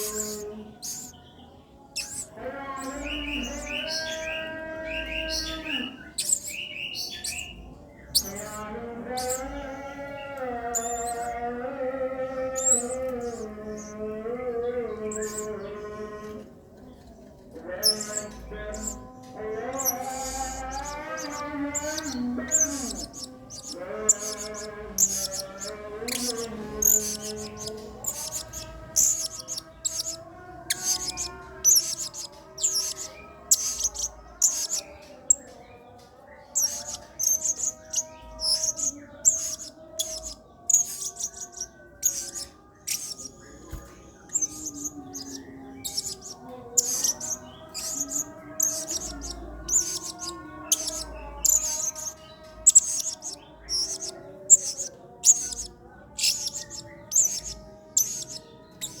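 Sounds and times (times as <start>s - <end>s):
parrot chirping: 0.0s - 1.1s, 2.0s - 2.3s, 10.6s - 11.3s, 12.5s - 14.0s, 17.8s - 34.9s, 36.5s - 59.0s.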